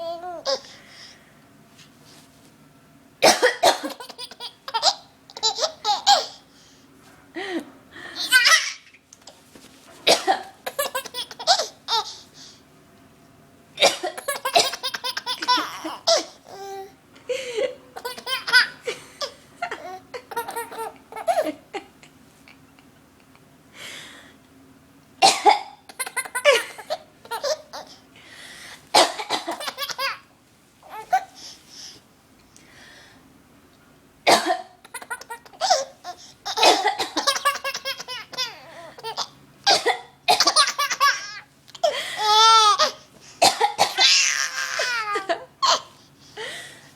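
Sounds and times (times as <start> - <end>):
baby laughing: 0.0 - 0.7, 3.8 - 6.4, 8.2 - 8.9, 10.6 - 12.2, 14.2 - 16.9, 18.0 - 22.0, 25.9 - 28.0, 29.4 - 31.3, 34.8 - 39.4, 40.4 - 43.0, 44.0 - 45.9
woman coughing: 3.2 - 4.1, 10.1 - 10.6, 13.8 - 14.8, 25.2 - 25.7, 29.0 - 29.7, 34.3 - 34.8, 36.6 - 37.3, 39.7 - 40.8, 43.4 - 44.1.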